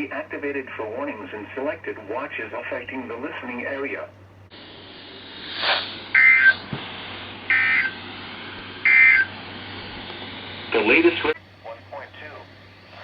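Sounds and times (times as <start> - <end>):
light hiss: 4.5 - 13.0
electronic warbles: 5.6 - 6.7, 7.5 - 8.0, 8.8 - 9.3.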